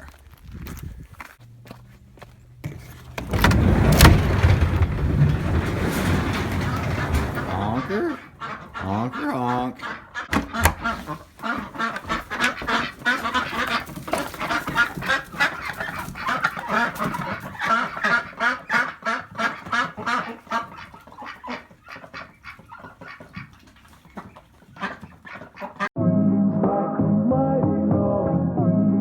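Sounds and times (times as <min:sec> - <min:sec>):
ducks quacking: 0:04.3 - 0:25.9.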